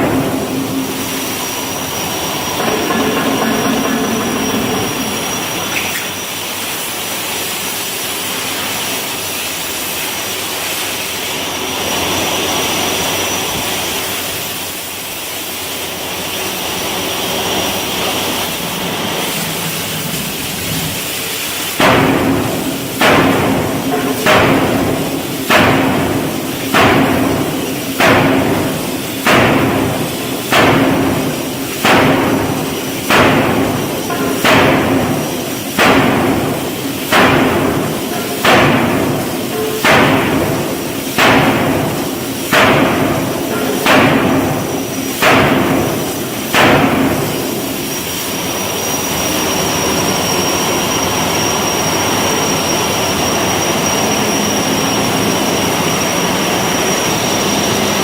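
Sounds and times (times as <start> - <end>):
forging hammer striking steel: 0.0 - 6.8, 21.7 - 48.2
thin high whine: 0.0 - 6.8
steady hiss: 0.0 - 58.0.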